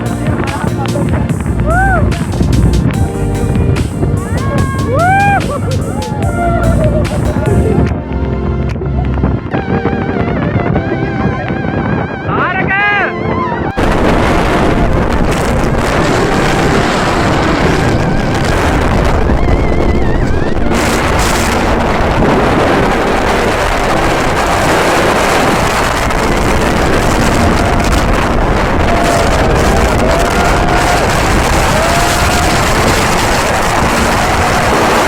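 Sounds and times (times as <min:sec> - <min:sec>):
faint voices: 0:00.0 - 0:02.9, 0:03.8 - 0:08.0
wind buffeting microphone: 0:00.0 - 0:35.0.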